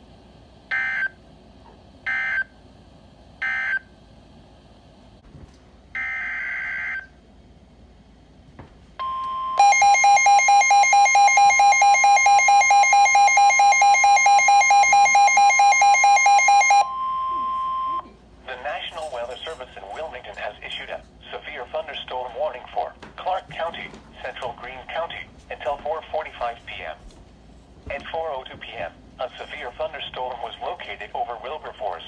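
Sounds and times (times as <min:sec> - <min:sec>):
rapidly pulsing electronic alarm beep: 0:00.7 - 0:01.2, 0:02.1 - 0:02.5, 0:03.4 - 0:03.9, 0:09.0 - 0:18.0
steady warning alarm tone: 0:00.7 - 0:01.2, 0:02.1 - 0:02.6, 0:03.4 - 0:03.9, 0:06.0 - 0:07.2, 0:09.0 - 0:18.1.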